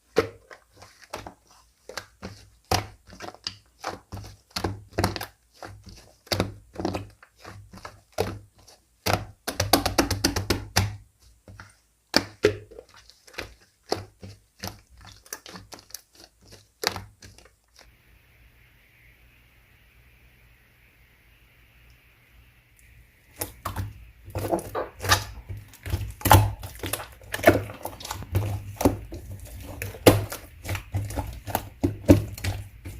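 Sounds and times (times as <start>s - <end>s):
slime squishing and popping: 23.3s - 32.9s.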